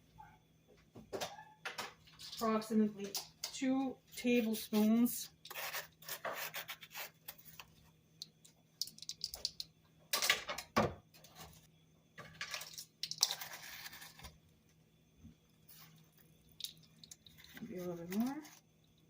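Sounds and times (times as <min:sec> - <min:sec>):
spoon clinking and scraping container: 0:12.4 - 0:14.3.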